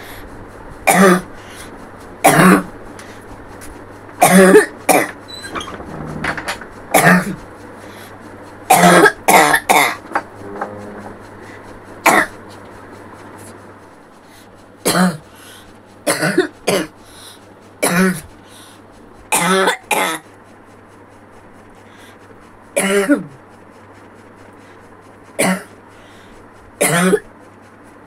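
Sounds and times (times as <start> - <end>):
person coughing: 0.9 - 1.3, 2.2 - 2.7, 4.2 - 5.2, 6.9 - 7.4, 8.7 - 10.0, 12.0 - 12.4, 14.9 - 15.2, 16.1 - 16.9, 17.8 - 18.3, 19.3 - 20.2, 22.8 - 23.4, 25.4 - 25.7, 26.8 - 27.3.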